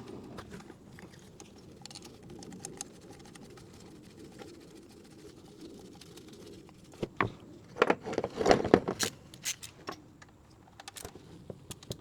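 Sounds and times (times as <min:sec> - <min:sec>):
metal tools and bolts clinking: 0:08.1 - 0:10.0.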